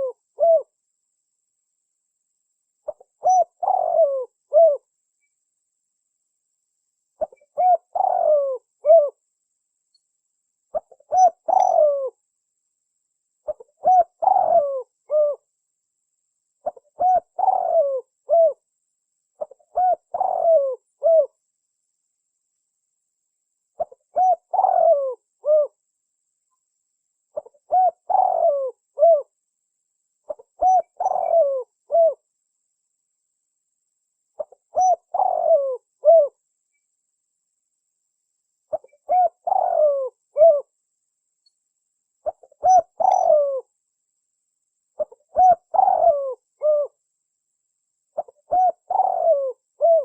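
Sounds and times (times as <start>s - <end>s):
dove cooing: 0.0s - 0.8s, 2.9s - 4.9s, 7.2s - 9.2s, 10.7s - 12.2s, 13.4s - 15.5s, 16.6s - 18.6s, 19.4s - 21.4s, 23.8s - 25.8s, 27.4s - 29.3s, 30.3s - 32.2s, 34.4s - 36.4s, 38.7s - 40.7s, 42.2s - 43.7s, 45.0s - 47.0s, 48.2s - 50.0s.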